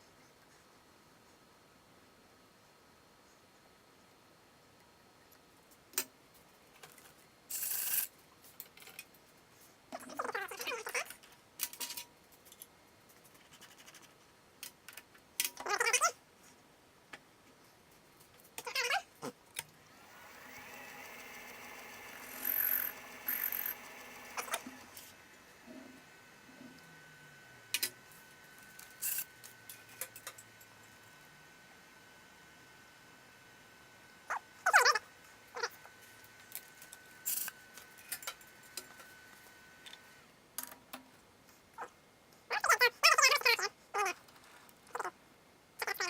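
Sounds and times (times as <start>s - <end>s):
small electric motor running: 7.5s - 8.1s, 19.8s - 31.5s, 34.2s - 40.0s
faint high whine: 19.8s - 40.2s.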